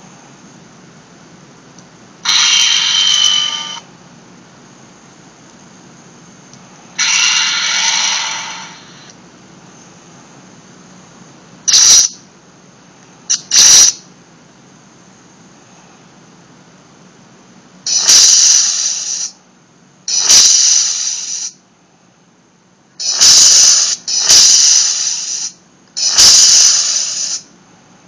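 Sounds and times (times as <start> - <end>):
lightsaber sound effect bursts: 2.2 - 3.9, 7.0 - 9.1, 11.7 - 12.2, 13.3 - 14.0, 17.9 - 19.3, 20.1 - 21.5, 23.0 - 27.5
low hum: 6.0 - 9.4.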